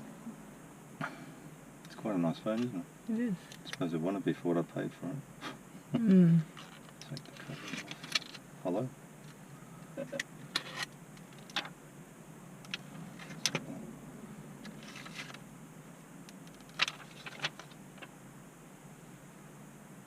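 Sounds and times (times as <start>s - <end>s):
crinkly plastic rustle: 16.5s - 18.1s.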